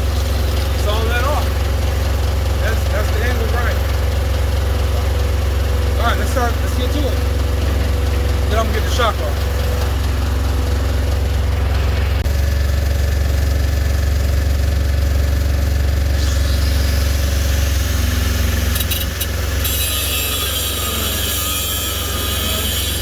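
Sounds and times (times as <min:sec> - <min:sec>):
engine running with low hum: 0:00.0 - 0:23.0
angle grinder cutting steel: 0:16.0 - 0:23.0.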